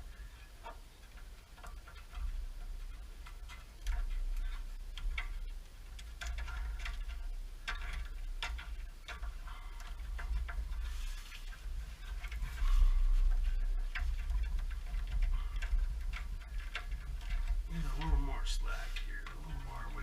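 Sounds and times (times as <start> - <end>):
low rumble: 9.4 - 20.0.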